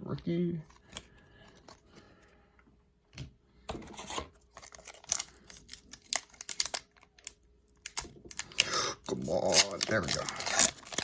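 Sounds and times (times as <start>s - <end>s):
foil wrapper tearing: 4.5s - 11.0s.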